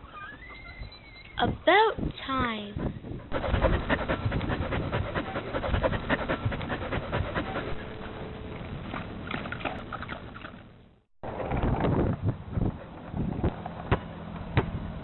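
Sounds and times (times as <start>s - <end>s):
dog panting: 2.8s - 8.2s.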